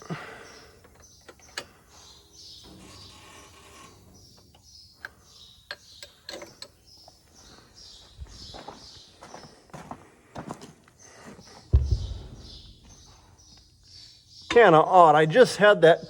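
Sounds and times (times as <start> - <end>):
steady noise: 11.8 - 13.2.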